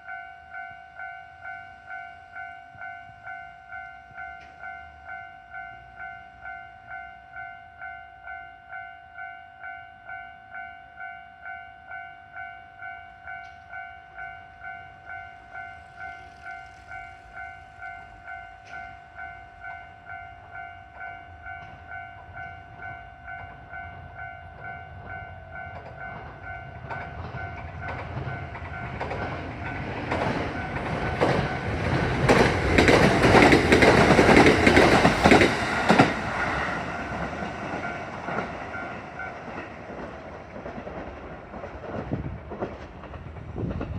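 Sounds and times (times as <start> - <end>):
train passing: 0.0 - 43.9
wheels clacking over rail joints: 24.5 - 43.9.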